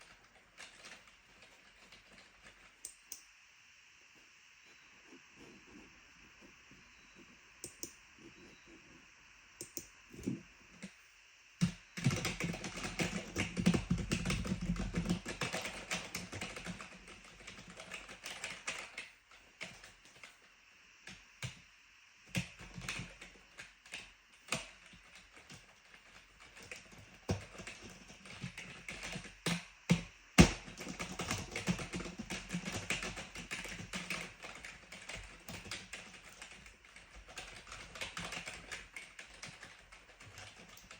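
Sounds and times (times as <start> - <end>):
typing on clicky keyboard: 0.0 - 3.2, 11.6 - 20.3, 22.3 - 40.9.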